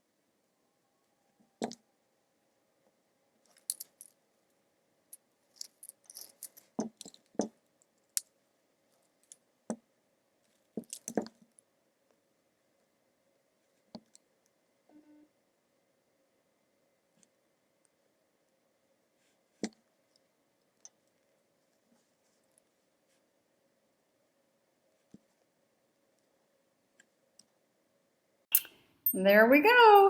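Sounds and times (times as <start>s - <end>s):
metal parts clicking on work surface: 3.5s - 4.1s.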